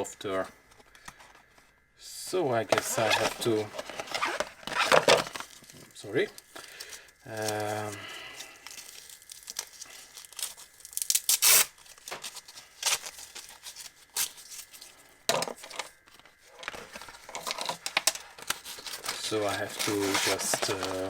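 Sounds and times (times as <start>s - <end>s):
packaging rustling and crackling: 2.6s - 21.0s.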